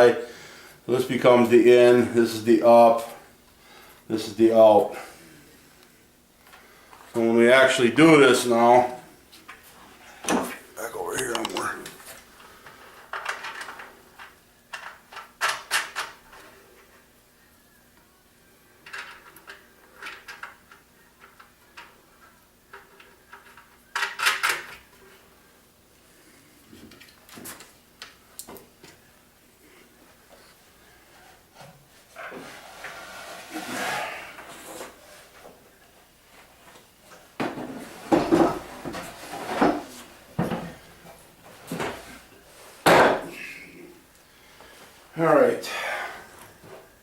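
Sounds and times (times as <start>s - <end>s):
parts knocking and clattering: 13.0s - 16.3s, 37.4s - 42.1s.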